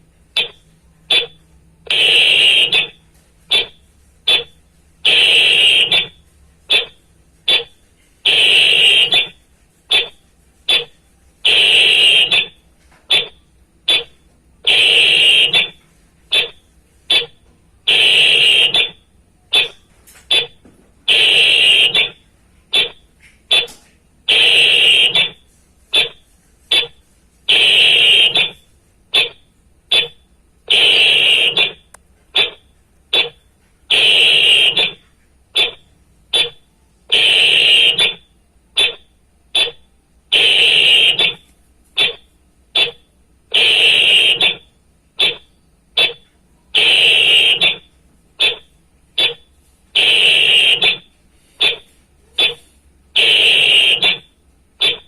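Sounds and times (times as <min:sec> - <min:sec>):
whistle blasts: 0:01.1 - 0:03.7, 0:05.1 - 0:07.7, 0:08.3 - 0:10.9, 0:11.5 - 0:13.3, 0:14.7 - 0:17.3, 0:17.9 - 0:19.7, 0:21.1 - 0:22.2, 0:24.3 - 0:25.4, 0:27.5 - 0:28.6, 0:29.9 - 0:32.5, 0:33.9 - 0:35.0, 0:36.4 - 0:38.2, 0:39.6 - 0:41.4, 0:43.6 - 0:45.4, 0:46.8 - 0:48.6, 0:50.0 - 0:51.0, 0:53.2 - 0:55.0.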